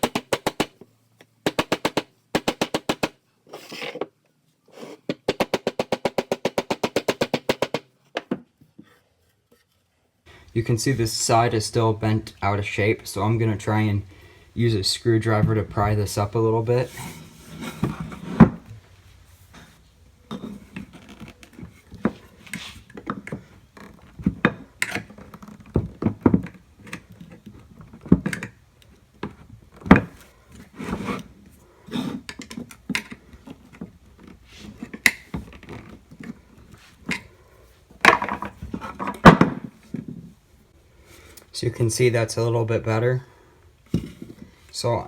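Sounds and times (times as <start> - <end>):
sharp knocks: 1.4 - 3.1.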